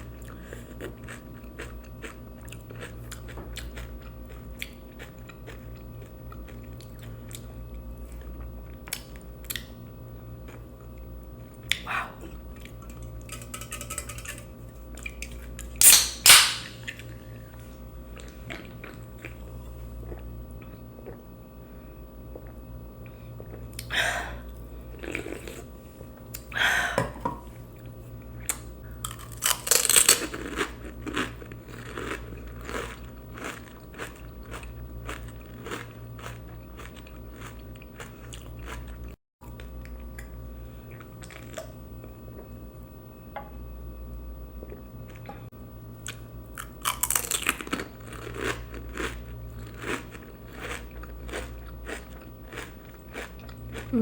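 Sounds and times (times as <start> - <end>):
crisp shells crunching: 29.0 - 38.8, 46.6 - 53.9.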